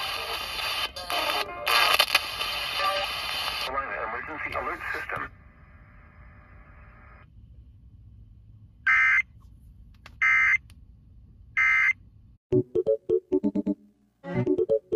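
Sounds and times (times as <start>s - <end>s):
faint hum: 3.7s - 12.4s.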